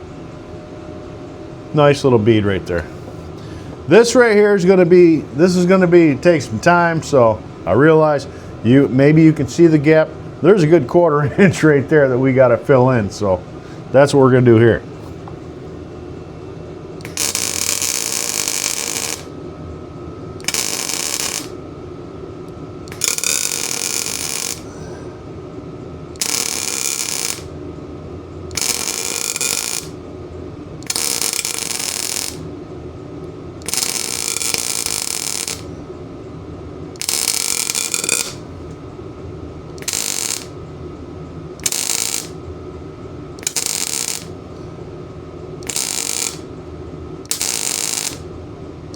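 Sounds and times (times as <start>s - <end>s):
steady hum: 0.0s - 48.9s
welding arc crackle: 17.0s - 19.4s, 20.4s - 21.6s, 22.9s - 24.7s, 26.2s - 27.5s, 28.5s - 30.0s, 30.8s - 32.5s, 33.6s - 35.7s, 37.0s - 38.4s, 39.8s - 40.6s, 41.6s - 42.4s, 43.4s - 44.4s, 45.6s - 46.5s, 47.3s - 48.3s.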